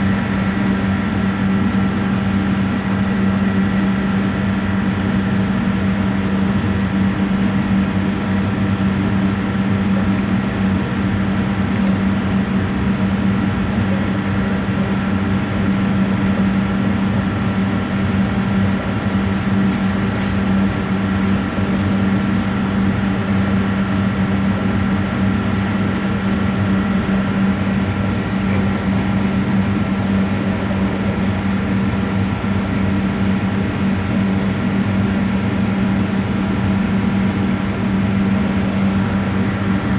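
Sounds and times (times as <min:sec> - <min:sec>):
loud mechanical hum: 0:00.0 - 0:39.9.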